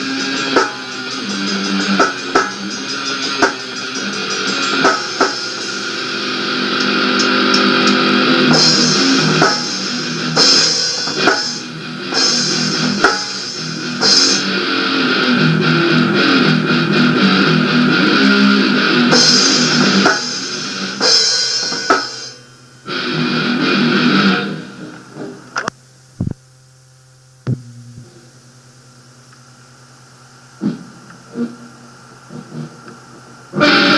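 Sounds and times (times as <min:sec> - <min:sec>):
rock band playing: 0:00.0 - 0:24.7.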